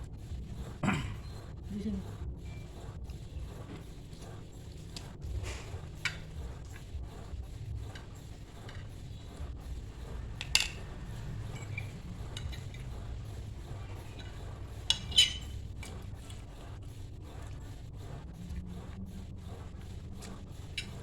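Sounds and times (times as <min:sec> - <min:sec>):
cutlery clinking against a bowl: 0:04.8 - 0:06.8, 0:07.9 - 0:09.3, 0:10.3 - 0:13.1, 0:13.8 - 0:16.6, 0:20.2 - 0:21.0.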